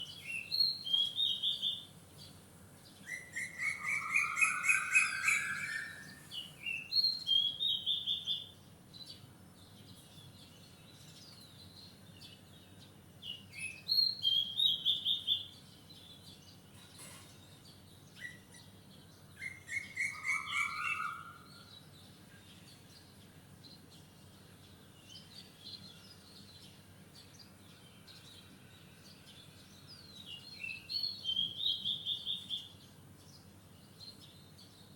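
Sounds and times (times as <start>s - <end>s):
songbirds singing: 0.0s - 34.9s
low long bird trill: 3.1s - 6.5s.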